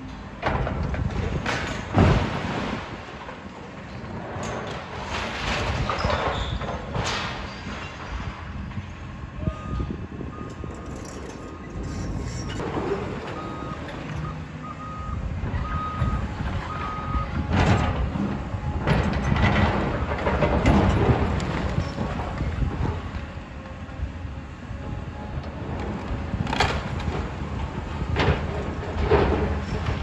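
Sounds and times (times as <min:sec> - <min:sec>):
machine and rubble noise: 0:00.0 - 0:30.0
low diesel rumble: 0:08.2 - 0:30.0
reversing alarm beeping: 0:09.4 - 0:12.6, 0:13.3 - 0:17.4.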